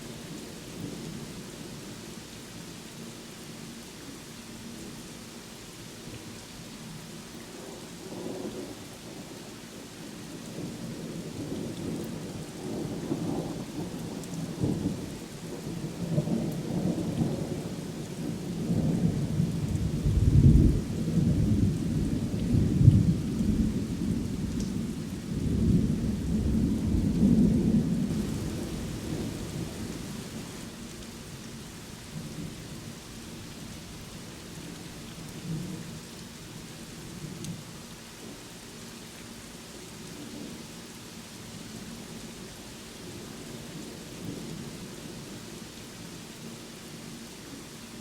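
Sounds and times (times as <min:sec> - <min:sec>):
rain falling: 0:00.0 - 0:48.0
thunder rumbling: 0:19.8 - 0:30.7.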